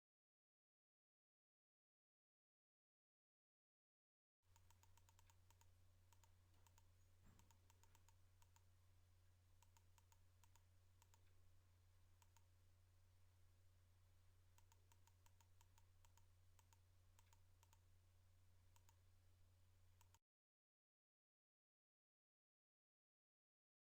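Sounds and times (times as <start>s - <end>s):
small sharp clicks: 4.5s - 8.7s, 9.6s - 11.4s, 12.2s - 12.5s, 14.6s - 17.8s, 18.7s - 19.0s, 20.0s - 20.2s
faint low hum: 4.5s - 20.2s.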